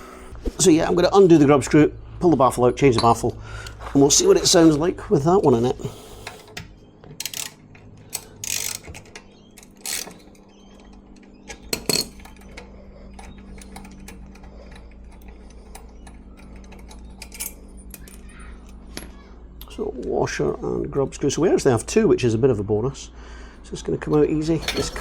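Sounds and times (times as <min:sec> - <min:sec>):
steady low hum: 0:00.0 - 0:25.0
metal tool clicks and clinks: 0:07.2 - 0:18.8.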